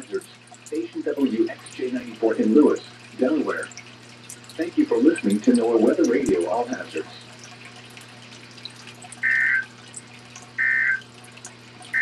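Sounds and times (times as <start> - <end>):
radio receiver hum and hiss: 4.6 - 7.2
two-tone digital screeches: 9.2 - 9.7, 10.6 - 11.0.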